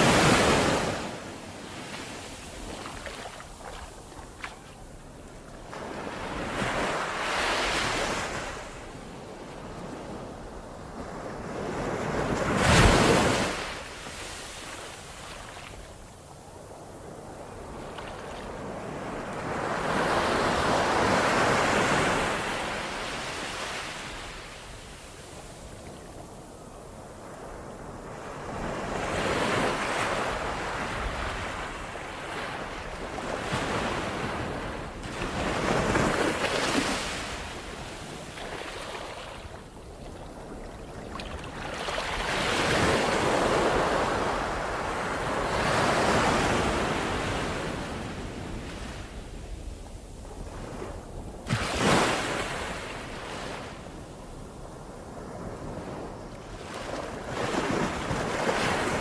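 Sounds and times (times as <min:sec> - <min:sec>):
ocean waves breaking: 0:00.0 - 0:09.3, 0:28.5 - 0:47.9.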